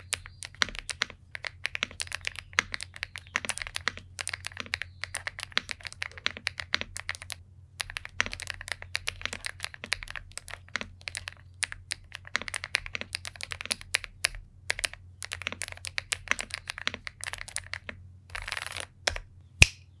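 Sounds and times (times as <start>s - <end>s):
mechanical keyboard key clacks: 0.0s - 19.2s
low steady hum: 0.0s - 20.0s.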